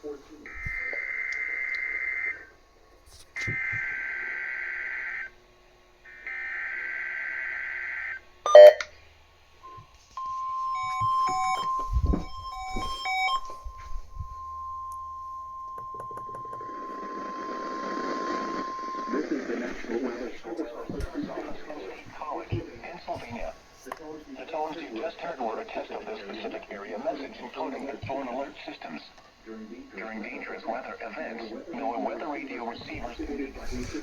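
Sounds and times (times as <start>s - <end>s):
steady weather alert tone: 0.0s - 2.7s, 6.1s - 9.0s, 9.7s - 34.0s
short beeps: 8.5s - 9.0s, 9.7s - 17.7s
warbling data tones: 10.6s - 23.5s.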